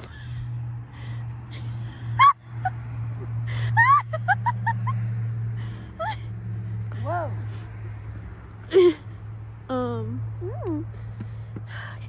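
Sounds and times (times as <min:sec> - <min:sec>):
person giggling and squealing: 0:01.5 - 0:05.0, 0:06.0 - 0:06.3.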